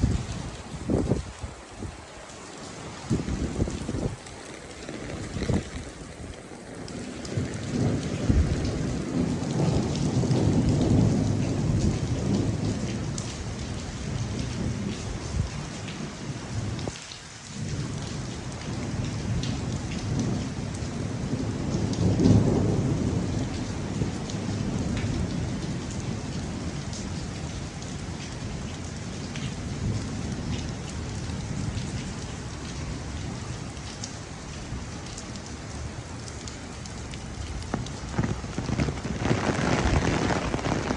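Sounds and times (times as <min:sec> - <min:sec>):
heavy rain pouring: 0:00.0 - 0:40.9
rolling thunder: 0:03.1 - 0:15.0, 0:17.6 - 0:26.7, 0:37.6 - 0:40.9.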